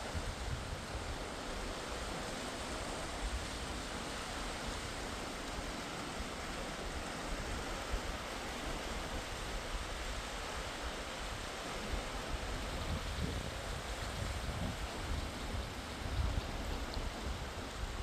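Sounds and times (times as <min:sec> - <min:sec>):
river water rushing: 0:00.0 - 0:18.0.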